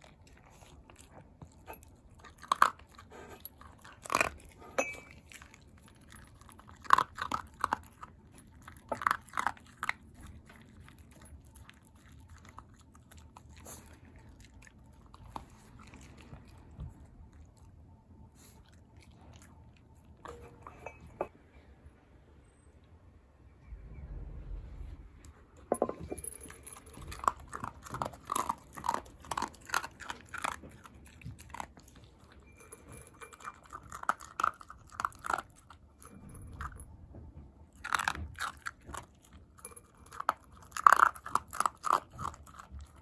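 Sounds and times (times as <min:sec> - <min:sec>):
dog crunching dry food: 0:00.0 - 0:17.6, 0:26.2 - 0:36.8, 0:37.7 - 0:43.0.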